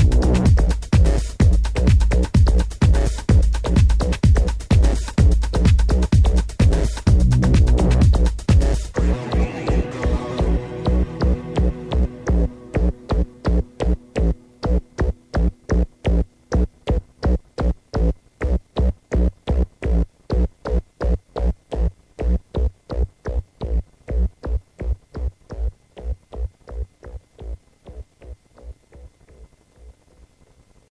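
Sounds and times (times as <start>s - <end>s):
electronic dance music kick drum: 0.0s - 29.5s
synth layers: 9.0s - 15.8s.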